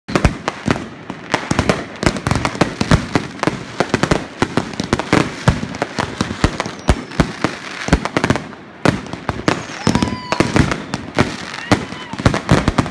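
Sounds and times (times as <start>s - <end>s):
fireworks and firecrackers banging: 0.1s - 12.9s.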